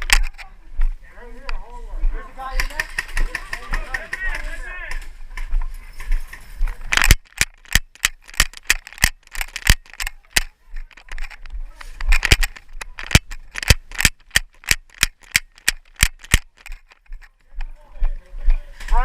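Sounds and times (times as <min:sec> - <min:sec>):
airsoft guns firing: 0:02.5 - 0:04.5.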